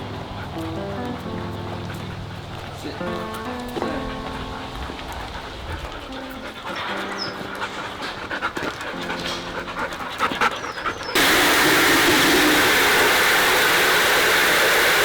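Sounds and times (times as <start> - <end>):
dog panting: 0.0 - 11.2
loud rushing noise: 11.2 - 15.0.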